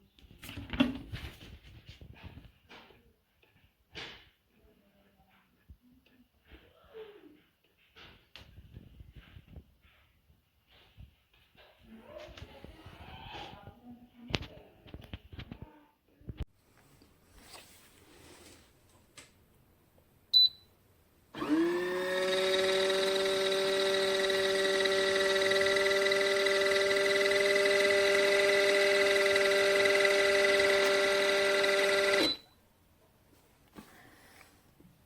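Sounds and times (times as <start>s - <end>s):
washing machine motor whine: 21.4s - 32.4s.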